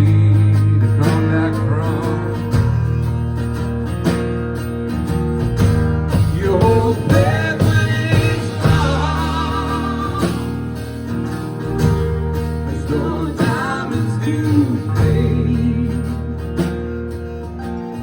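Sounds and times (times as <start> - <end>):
bass guitar: 0.0 - 18.0
guitars strumming: 0.0 - 18.0
person singing: 6.3 - 10.8, 12.5 - 16.6.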